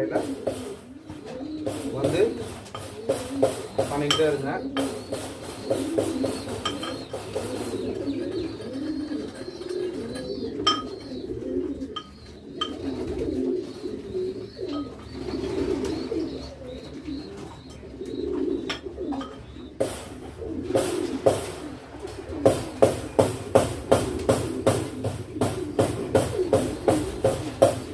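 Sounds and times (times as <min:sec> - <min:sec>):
pigeons cooing: 0:00.0 - 0:27.9
sharp knocks: 0:00.1 - 0:00.9, 0:01.7 - 0:07.9, 0:18.7 - 0:21.8, 0:22.4 - 0:27.9.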